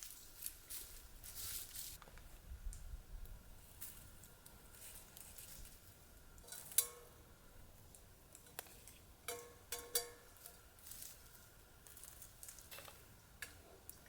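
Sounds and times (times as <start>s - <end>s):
metal cookware clinking: 6.5s - 7.2s, 9.3s - 10.5s.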